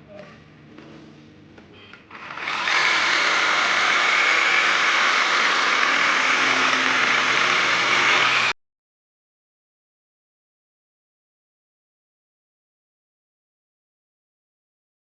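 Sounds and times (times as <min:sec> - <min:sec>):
small motor rushing: 0:02.1 - 0:08.6.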